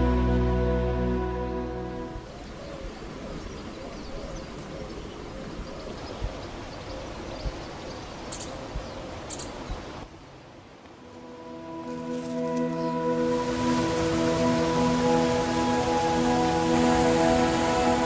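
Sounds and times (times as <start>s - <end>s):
steady rushing background: 11.1s - 18.0s.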